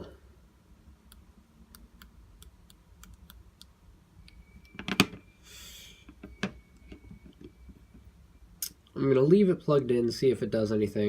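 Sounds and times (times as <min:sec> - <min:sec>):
brief hiss: 0:05.4 - 0:06.1.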